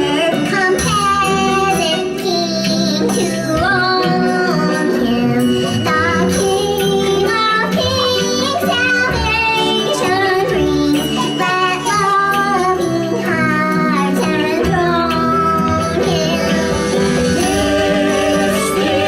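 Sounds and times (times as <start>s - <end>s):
instrumental accompaniment with beat: 0.0s - 19.0s
person singing: 0.0s - 19.0s.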